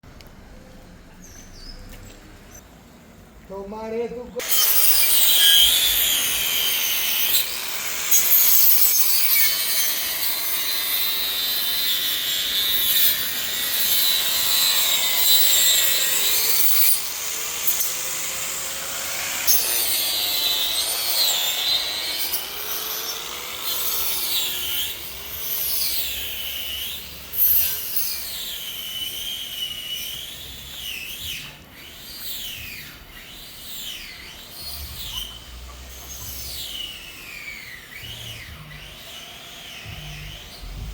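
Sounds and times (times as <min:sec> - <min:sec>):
squeaky wavering tones: 0:24.6 - 0:40.9.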